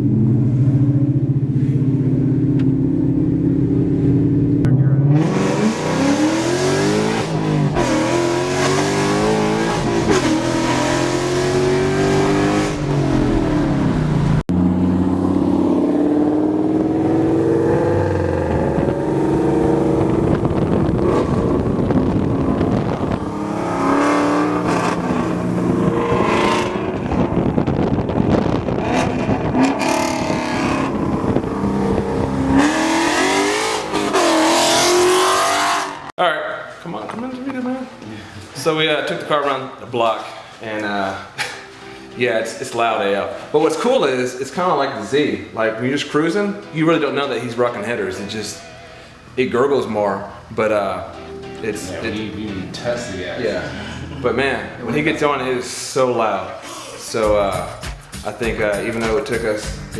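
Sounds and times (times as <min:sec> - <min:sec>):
loud car engine accelerating: 0:00.0 - 0:36.1.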